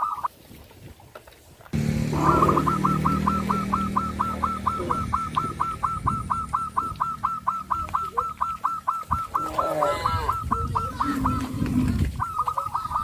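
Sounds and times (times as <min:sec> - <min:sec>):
rapid identical chirps: 0:01.8 - 0:11.5
geese honking: 0:01.8 - 0:13.0.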